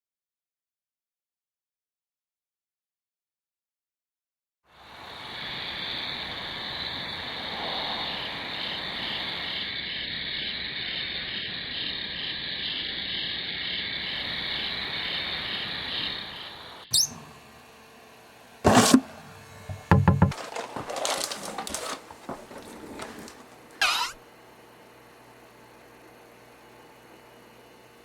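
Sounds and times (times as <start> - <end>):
high-pitched pulsing chirring: 8.7 - 18.2, 23.8 - 24.2.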